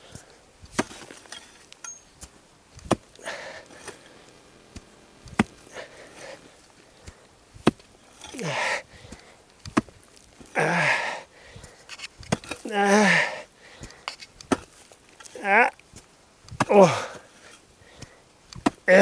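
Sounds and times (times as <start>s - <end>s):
digging tool striking ground: 0.1s - 10.6s, 11.6s - 12.7s, 13.8s - 19.0s
man breathing hard: 3.2s - 4.4s, 5.7s - 7.4s, 8.4s - 9.5s, 10.6s - 11.9s, 12.8s - 14.1s, 16.8s - 18.2s
man grunting: 10.5s - 11.2s, 12.7s - 13.4s, 15.4s - 15.8s, 16.7s - 17.2s.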